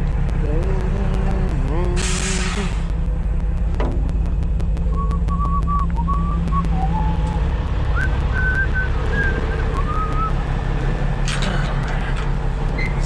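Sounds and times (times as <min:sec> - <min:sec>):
truck engine running: 0:00.0 - 0:13.0
brief noisy burst: 0:02.0 - 0:02.9
person whistling a tune: 0:05.0 - 0:10.3.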